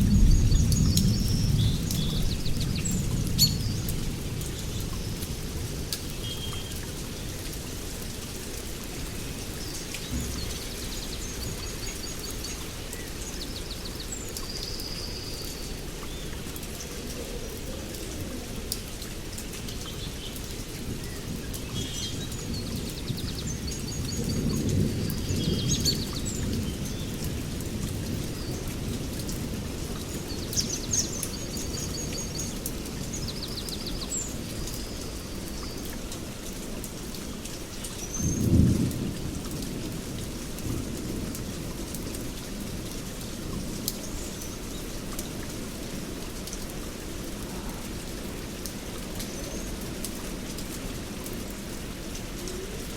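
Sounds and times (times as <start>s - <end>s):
heavy rain on foliage: 0.0s - 52.9s.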